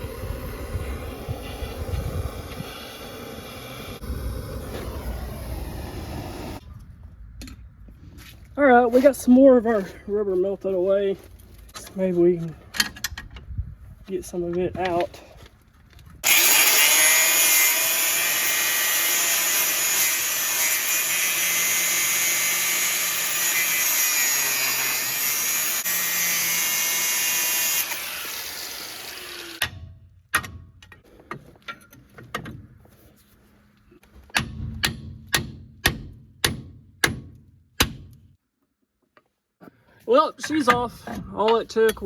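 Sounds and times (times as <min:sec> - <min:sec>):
angle grinder cutting metal: 0:00.0 - 0:06.6, 0:16.2 - 0:29.8
sharp metallic knocks: 0:34.3 - 0:38.2.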